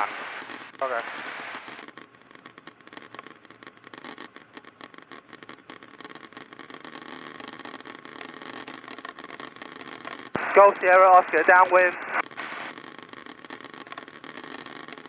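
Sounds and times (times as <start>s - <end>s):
light crackling: 0.0s - 15.0s.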